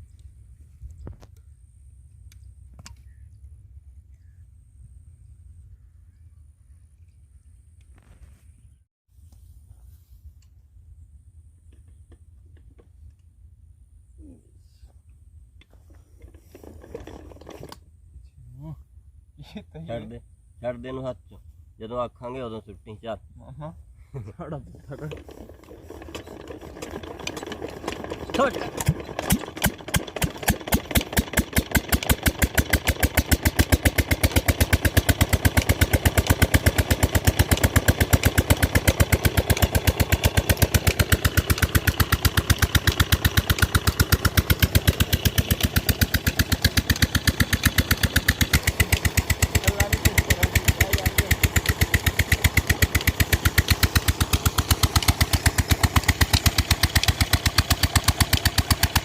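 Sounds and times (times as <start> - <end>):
diesel engine running: 24.8 - 59.0.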